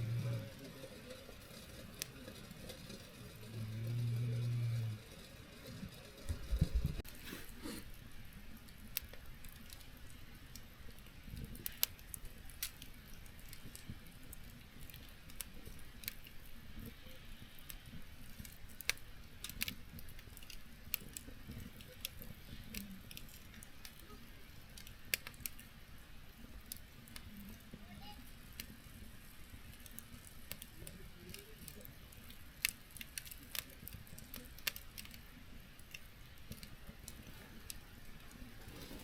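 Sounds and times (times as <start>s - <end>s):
low rumble of burning fire: 0.0s - 39.0s
wood snapping and popping: 8.7s - 25.7s, 28.5s - 39.0s.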